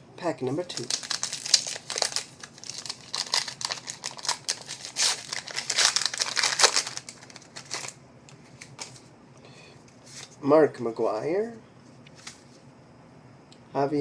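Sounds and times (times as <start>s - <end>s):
wrapper crinkling and tearing: 0.6s - 9.0s.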